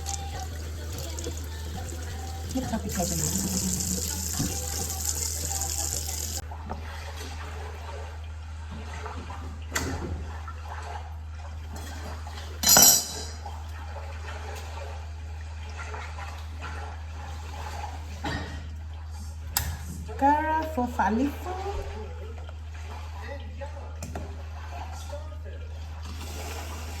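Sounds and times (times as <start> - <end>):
kitchen tap running: 0.0 - 6.4.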